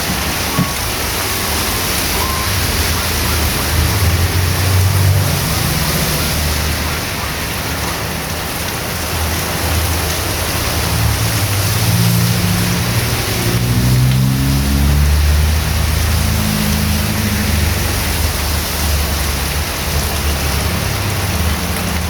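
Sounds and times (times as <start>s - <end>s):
heavy rain on a street: 0.0s - 22.0s
passing vehicle engine hum: 1.0s - 22.0s.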